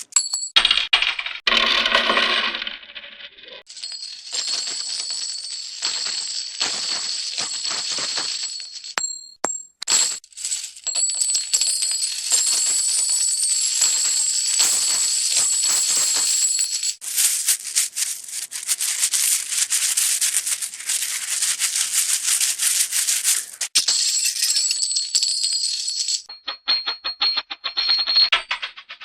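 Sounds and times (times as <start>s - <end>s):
coins rattling: 0.0s - 26.3s
coins clinking and jingling: 3.7s - 28.6s.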